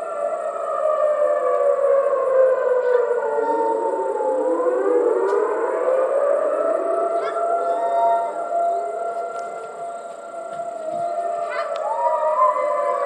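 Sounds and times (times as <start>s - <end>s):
tornado sirens wailing: 0.0s - 13.0s.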